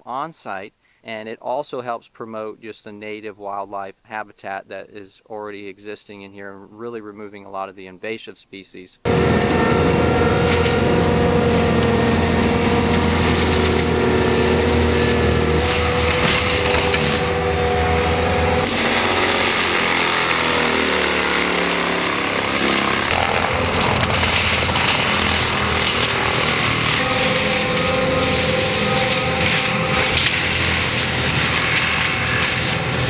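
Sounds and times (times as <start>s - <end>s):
mulcher shredding brush: 9.1s - 33.0s.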